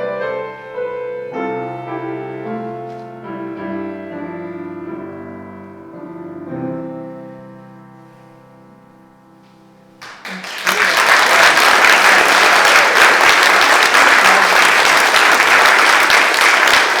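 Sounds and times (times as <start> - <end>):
piano chord: 0.0 - 10.2
audience applause: 10.0 - 17.0.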